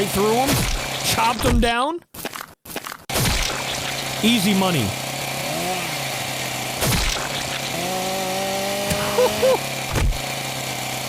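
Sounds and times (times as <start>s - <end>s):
cartoon chainsaw sound effect: 3.2s - 11.0s.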